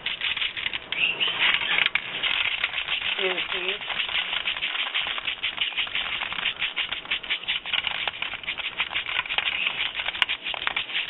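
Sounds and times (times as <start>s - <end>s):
seeds rattling in a sifter: 0.0s - 11.0s.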